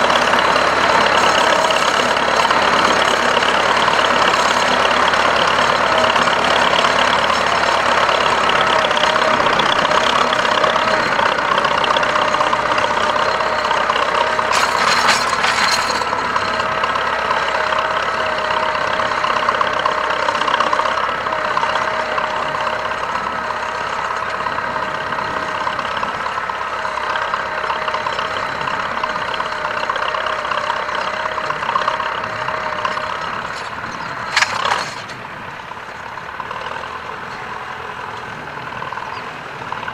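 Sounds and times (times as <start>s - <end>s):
tractor diesel engine under load: 0.0s - 39.9s.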